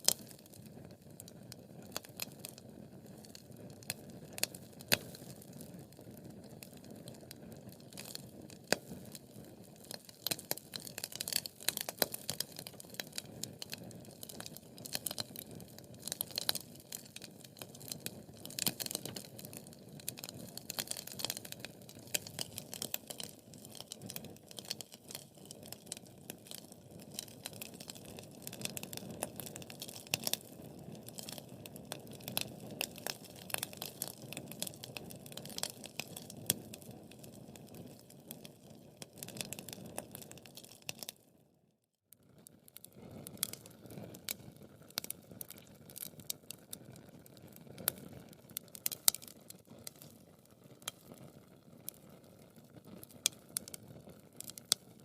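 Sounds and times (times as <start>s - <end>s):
flames rustling: 0.0s - 41.1s, 42.8s - 52.2s
logs crackling and popping: 0.0s - 41.2s, 42.4s - 55.0s.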